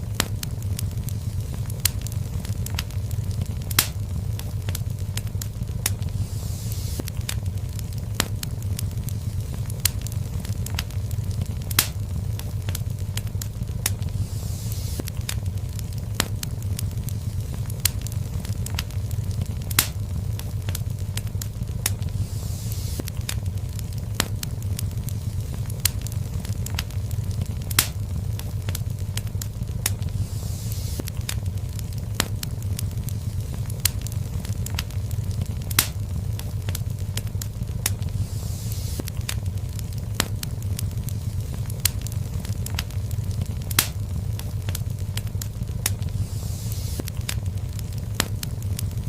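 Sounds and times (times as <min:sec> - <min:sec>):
fireplace fire crackling: 0:00.0 - 0:49.0
soft hiss: 0:00.0 - 0:49.0
sharp pops: 0:01.4 - 0:04.0, 0:09.4 - 0:12.0, 0:12.7 - 0:20.0, 0:25.4 - 0:28.1, 0:28.7 - 0:36.0, 0:36.7 - 0:48.9.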